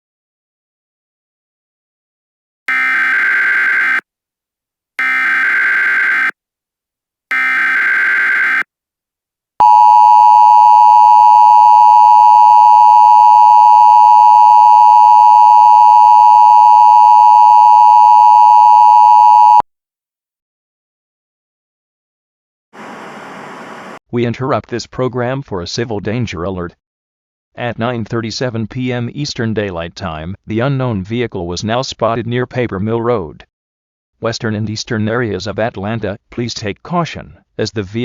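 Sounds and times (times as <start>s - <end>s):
two-tone attention signal: 9.6s - 19.6s.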